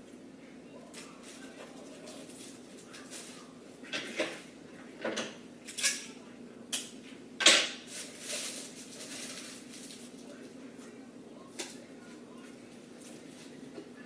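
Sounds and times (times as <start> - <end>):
mylar blanket crinkling: 7.8 - 10.5.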